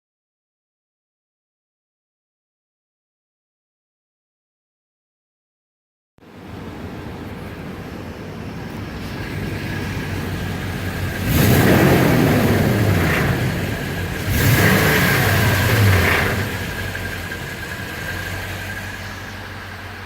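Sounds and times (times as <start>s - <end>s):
car engine revving: 8.9s - 20.0s.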